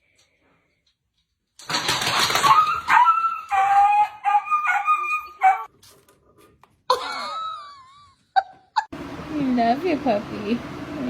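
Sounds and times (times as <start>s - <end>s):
dog howling: 2.4s - 5.7s.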